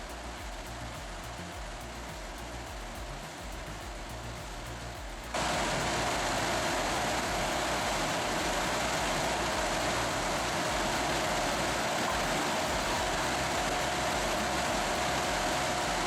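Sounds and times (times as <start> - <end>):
heavy machinery running: 5.4 - 16.0.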